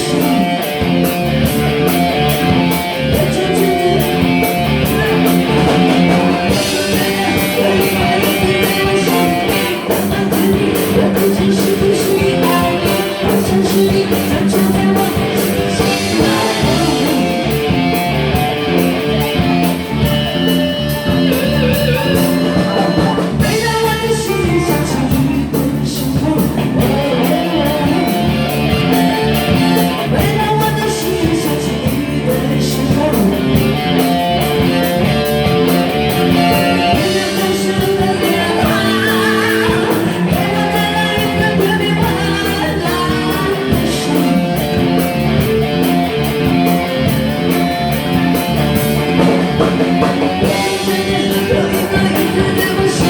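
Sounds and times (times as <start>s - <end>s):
guitar: 0.0s - 53.0s
person singing: 0.0s - 53.0s
drum beat: 0.1s - 27.2s.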